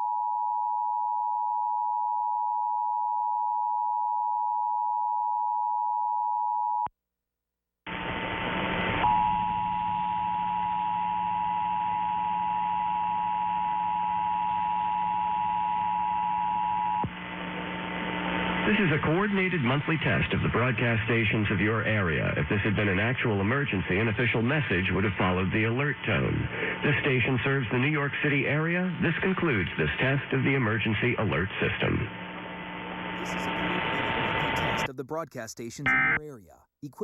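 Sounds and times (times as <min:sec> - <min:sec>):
hissing humming background: 0:08.0 - 0:35.0
two-tone alarm: 0:09.0 - 0:17.0.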